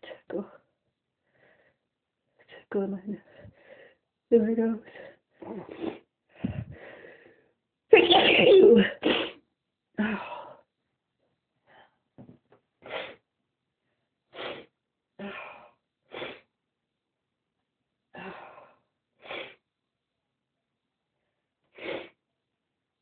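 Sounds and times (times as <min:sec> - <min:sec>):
breathing: 0:01.2 - 0:04.1, 0:04.8 - 0:05.6, 0:06.3 - 0:07.6, 0:11.6 - 0:12.1, 0:18.2 - 0:19.6
person sneezing: 0:07.9 - 0:09.4.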